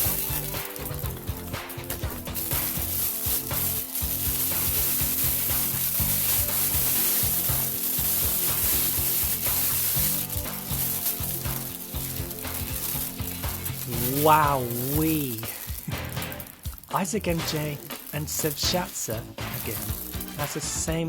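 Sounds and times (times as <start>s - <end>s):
background music: 0.0s - 21.0s
plastic packaging rustling: 0.0s - 21.0s.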